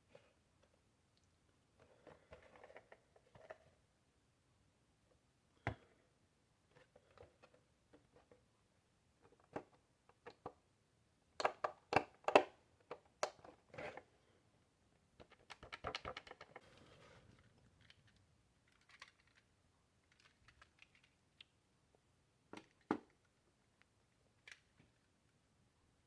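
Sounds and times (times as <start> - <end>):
plastic toy clicks and knocks: 18.7 - 19.4.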